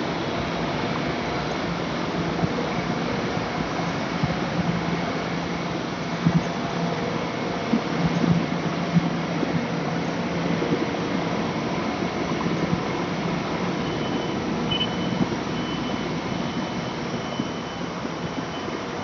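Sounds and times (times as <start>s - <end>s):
repeating high beep: 13.8s - 17.8s.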